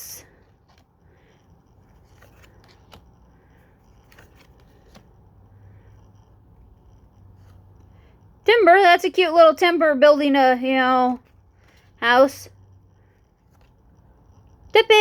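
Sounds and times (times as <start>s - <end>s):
trading cards clicking and rustling: 0.3s - 6.1s, 13.1s - 14.2s.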